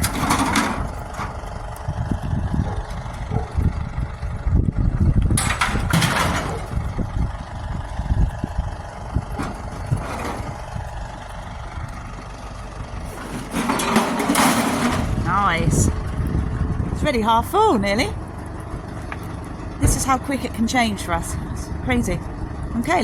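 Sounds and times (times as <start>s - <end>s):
short knocks and rattles: 0.0s - 1.5s, 5.4s - 7.0s, 13.1s - 15.4s
truck engine rumbling: 0.0s - 23.0s.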